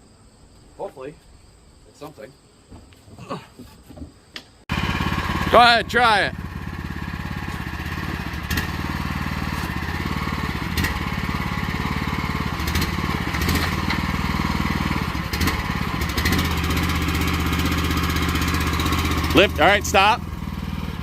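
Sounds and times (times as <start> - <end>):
single-cylinder engine running: 4.7 - 21.0.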